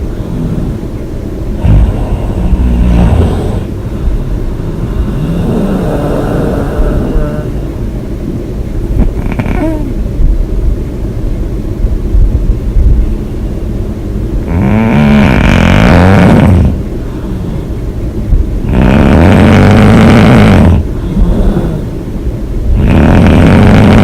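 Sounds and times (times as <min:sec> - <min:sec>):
woman snoring loudly: 0:01.6 - 0:03.7, 0:04.7 - 0:07.6, 0:09.2 - 0:10.0, 0:14.5 - 0:16.8, 0:18.6 - 0:22.0, 0:22.7 - 0:24.0.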